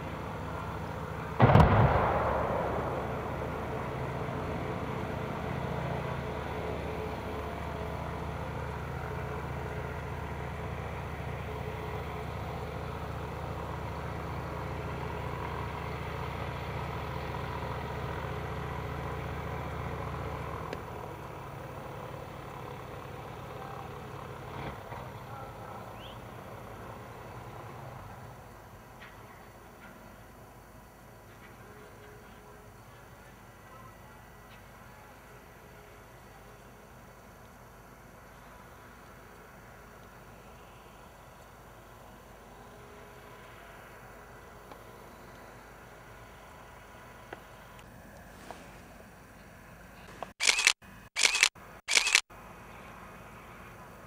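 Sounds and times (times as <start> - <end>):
steady low hum: 0.0 - 15.7
large explosion blast: 1.4 - 4.9.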